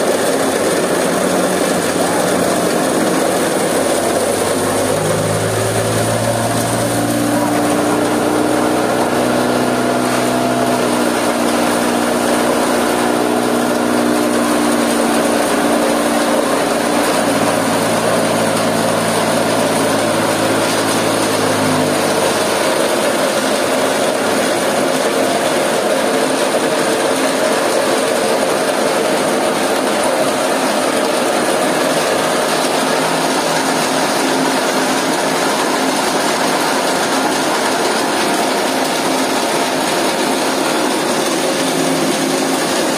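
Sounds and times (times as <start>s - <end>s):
stone crusher running: 0.0s - 42.9s
steady humming tones: 0.5s - 23.2s.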